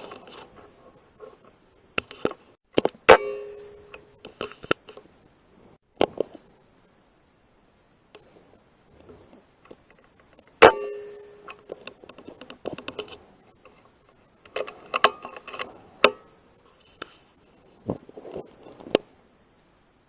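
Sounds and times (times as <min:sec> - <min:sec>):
rifle shot with metallic ring: 0:03.1 - 0:04.0, 0:10.6 - 0:11.6
rifle clicks and rattles: 0:11.4 - 0:16.2.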